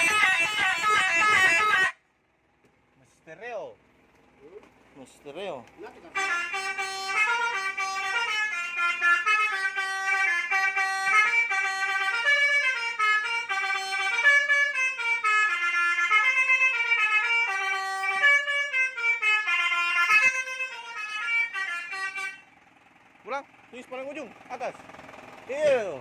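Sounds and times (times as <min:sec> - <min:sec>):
electric horn playing melody: 0:00.0 - 0:02.0, 0:06.1 - 0:22.4.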